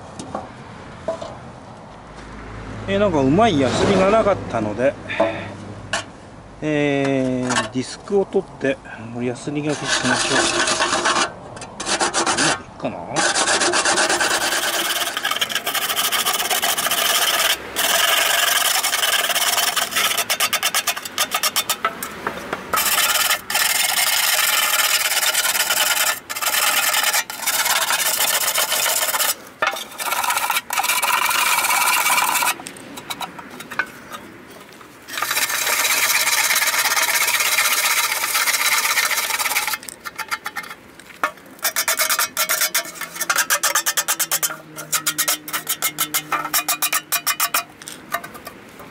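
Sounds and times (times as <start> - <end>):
sanding disc rasping on metal: 9.6 - 48.9.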